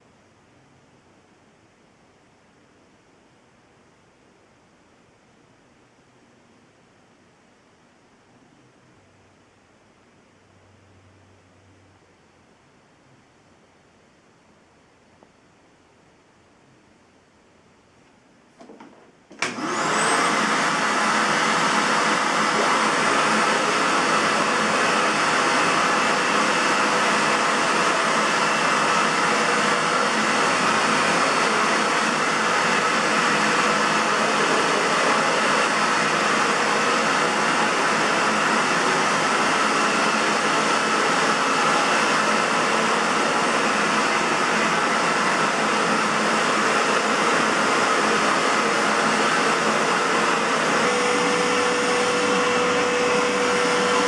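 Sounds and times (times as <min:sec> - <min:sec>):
vacuum cleaner running: 0:18.6 - 0:54.0.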